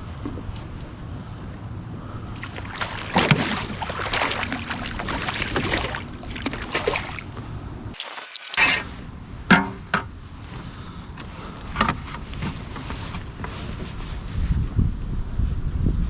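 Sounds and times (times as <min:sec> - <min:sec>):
wind rumbling on microphone: 0:00.0 - 0:08.0, 0:10.2 - 0:16.0
water splashes: 0:02.4 - 0:08.6.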